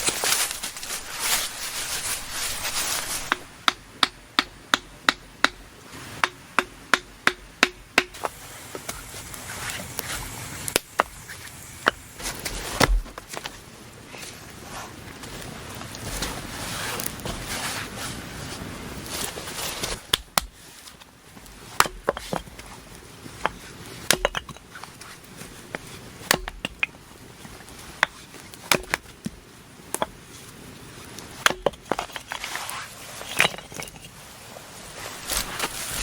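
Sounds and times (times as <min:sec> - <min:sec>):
low steady hiss: 0:00.0 - 0:36.0
sharp knocks and cracks: 0:06.2 - 0:08.3, 0:19.8 - 0:20.6, 0:21.8 - 0:22.6, 0:23.4 - 0:25.0, 0:25.7 - 0:30.2, 0:31.4 - 0:32.4.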